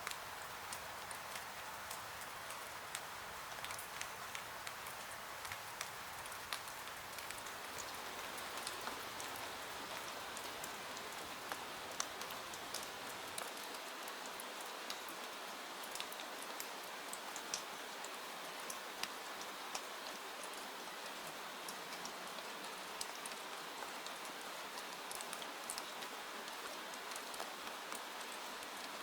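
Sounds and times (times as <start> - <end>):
rain pops and ticks: 0.0 - 29.0
steady rain hiss: 0.0 - 29.0.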